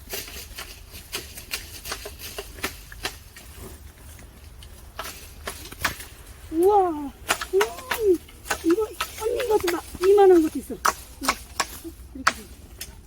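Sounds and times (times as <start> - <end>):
plums falling and tapping: 4.6 - 13.0.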